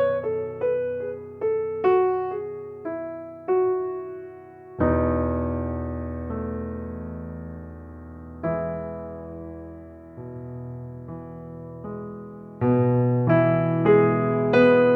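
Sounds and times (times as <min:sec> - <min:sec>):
gentle piano melody: 0:00.0 - 0:14.9.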